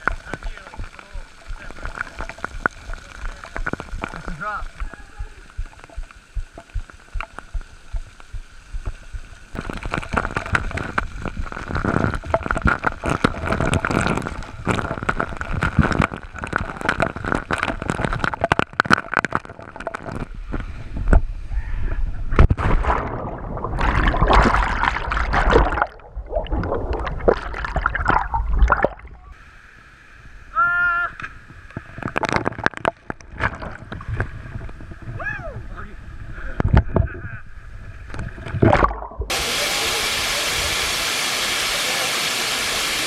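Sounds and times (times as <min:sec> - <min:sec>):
sharp water splashes: 0:00.0 - 0:20.3, 0:22.4 - 0:29.2, 0:38.4 - 0:39.6
water gurgling and sloshing: 0:00.0 - 0:21.5, 0:22.1 - 0:29.5, 0:31.4 - 0:39.4.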